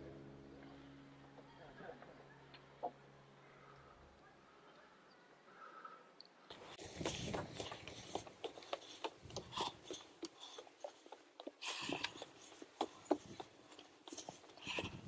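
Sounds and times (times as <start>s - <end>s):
footsteps on stony trail: 6.5s - 15.0s.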